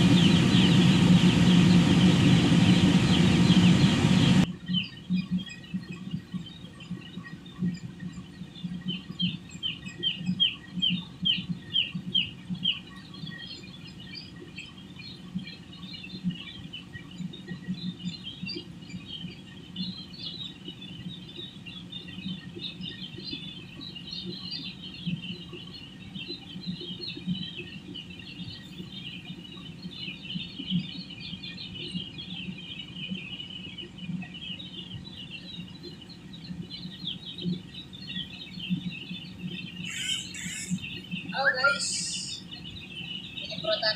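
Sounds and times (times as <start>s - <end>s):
low steady hum: 0.0s - 43.9s
chickens peeping and chirping: 36.8s - 43.9s.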